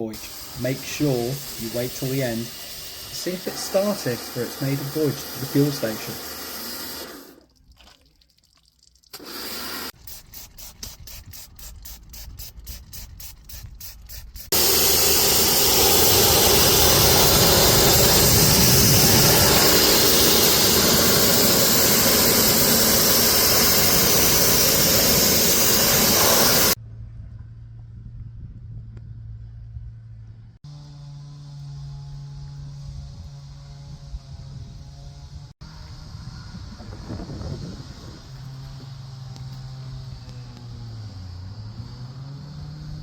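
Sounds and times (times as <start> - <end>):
water spray hissing: 0.0 - 7.5, 9.1 - 26.8
rhythmic water spurts: 0.0 - 26.8.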